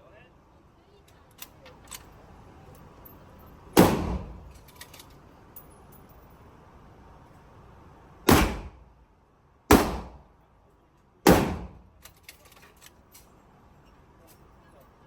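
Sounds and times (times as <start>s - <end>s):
gunshots echoing indoors: 3.8s - 4.4s, 8.3s - 8.7s, 9.7s - 10.2s, 11.3s - 11.7s.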